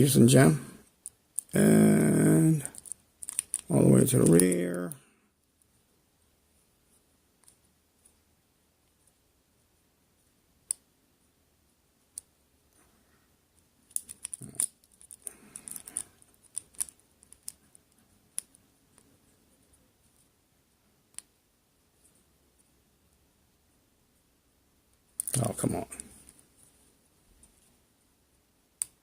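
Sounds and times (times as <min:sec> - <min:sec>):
lock pick clicking and scraping: 0:02.7 - 0:03.7, 0:13.9 - 0:17.7.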